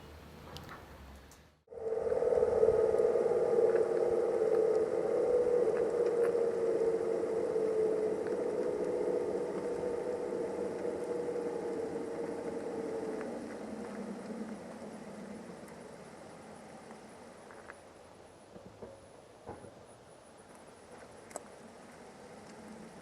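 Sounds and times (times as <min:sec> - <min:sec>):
electric motor whining: 0:01.8 - 0:17.7.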